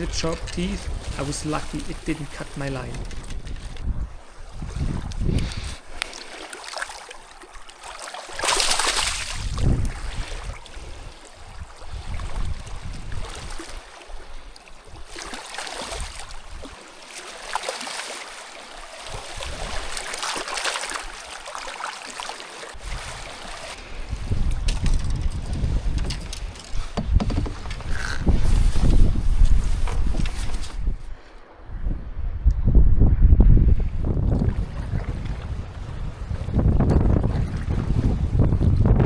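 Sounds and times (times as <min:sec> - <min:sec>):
wind rumble on microphone: 0:00.0 - 0:06.1, 0:09.0 - 0:16.8, 0:19.0 - 0:20.0, 0:22.8 - 0:39.0
water splashing around a canoe: 0:00.0 - 0:31.5, 0:34.0 - 0:39.0.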